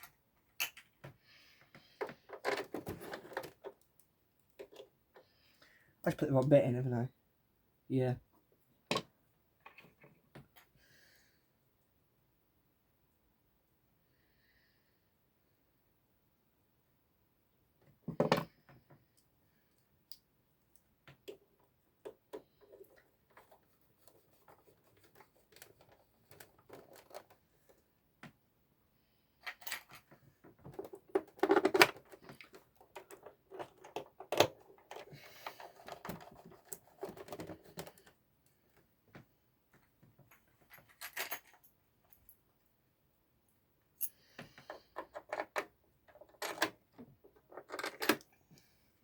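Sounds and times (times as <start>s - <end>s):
screwdriver and small parts rattling: 0.0s - 3.8s, 4.4s - 5.2s, 21.1s - 27.8s, 29.4s - 38.2s, 40.2s - 42.4s, 44.0s - 48.3s.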